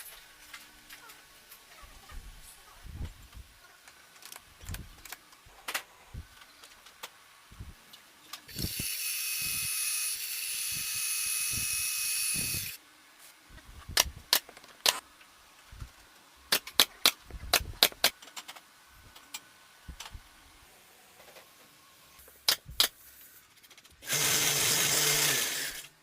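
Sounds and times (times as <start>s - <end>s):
small motor hissing: 8.5s - 12.8s, 24.0s - 25.9s.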